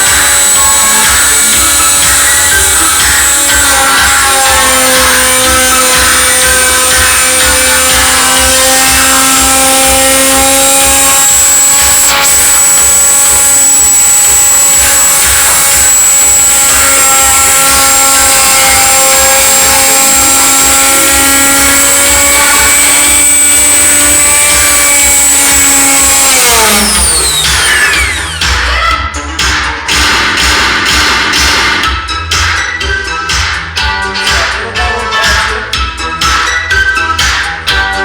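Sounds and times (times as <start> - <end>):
milling machine spindle motor whine: 0.0 - 28.6.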